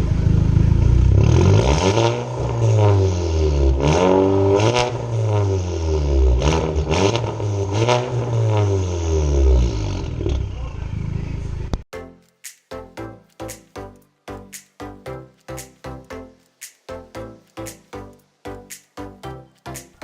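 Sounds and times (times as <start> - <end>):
car engine revving: 0.0 - 11.7.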